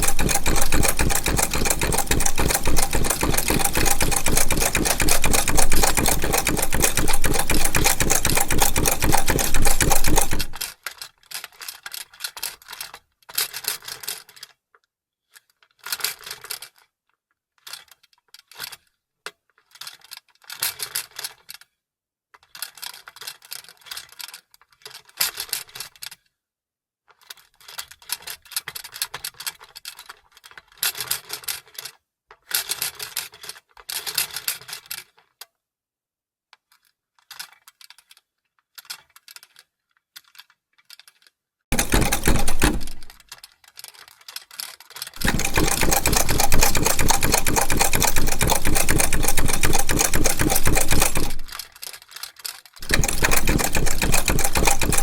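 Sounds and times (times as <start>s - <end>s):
sewing machine stitching: 0.0s - 10.6s, 41.7s - 43.2s, 45.2s - 51.7s, 52.8s - 55.0s
sewing machine clicking and rattling: 0.0s - 10.8s, 40.2s - 55.0s.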